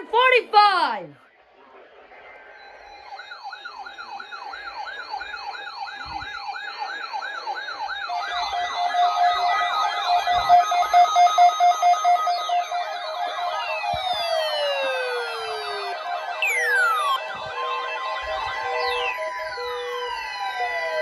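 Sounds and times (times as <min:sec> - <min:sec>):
siren-like alarm whoops: 0:02.7 - 0:21.0
pulsing beep: 0:14.0 - 0:17.3, 0:18.3 - 0:20.0
steady beeping tones: 0:15.1 - 0:21.0.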